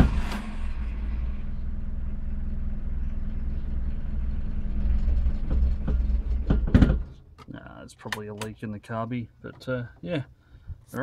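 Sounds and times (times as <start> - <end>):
car engine idling: 0.0 - 6.8
clicks and loud knocks: 5.2 - 8.6.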